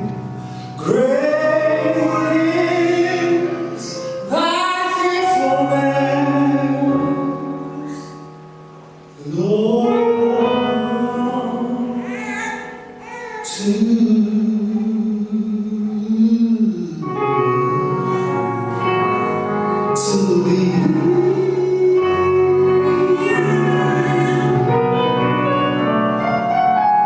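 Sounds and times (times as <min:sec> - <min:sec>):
gospel singing: 0:00.0 - 0:08.3, 0:09.2 - 0:25.5.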